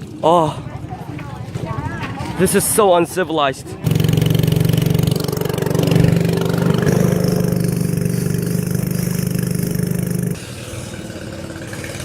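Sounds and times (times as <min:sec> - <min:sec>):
boat engine running: 0:03.8 - 0:10.4.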